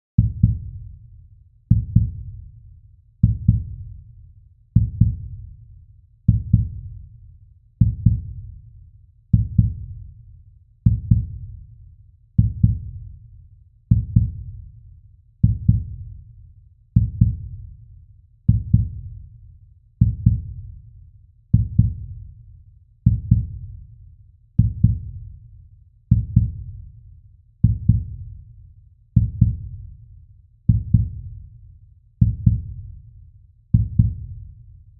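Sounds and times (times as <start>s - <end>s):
heartbeat thumps: 0.2s - 0.8s, 1.7s - 2.3s, 3.2s - 3.8s, 4.8s - 5.4s, 6.3s - 7.0s, 7.8s - 8.5s, 9.3s - 10.0s, 10.9s - 11.4s, 12.4s - 13.1s, 13.9s - 14.5s, 15.4s - 16.0s, 17.0s - 17.6s, 18.5s - 19.2s, 20.0s - 20.6s, 21.6s - 22.2s, 23.0s - 23.6s, 24.6s - 25.2s, 26.1s - 26.7s, 27.6s - 28.3s, 29.2s - 29.8s, 30.7s - 31.3s, 32.2s - 32.9s, 33.7s - 34.3s.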